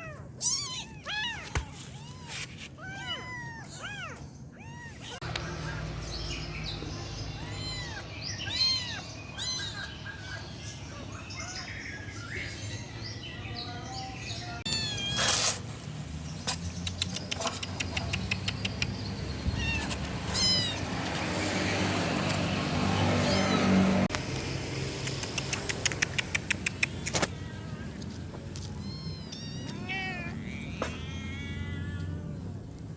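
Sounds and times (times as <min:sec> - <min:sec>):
kittens mewing: 0:00.0 - 0:13.0, 0:13.6 - 0:15.6, 0:17.0 - 0:24.1, 0:25.0 - 0:32.9.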